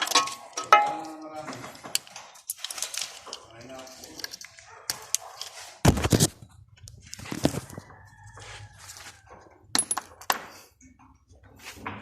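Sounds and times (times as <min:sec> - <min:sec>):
metal tools knocking and clinking: 0:00.0 - 0:05.5, 0:09.7 - 0:10.5.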